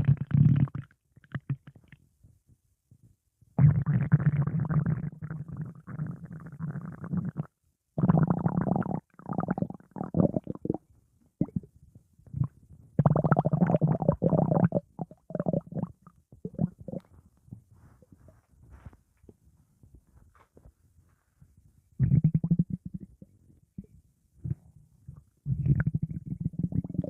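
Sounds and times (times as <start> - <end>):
stomach growling and gurgling: 0.0 - 2.0, 3.6 - 10.8, 11.4 - 17.2, 22.0 - 27.0.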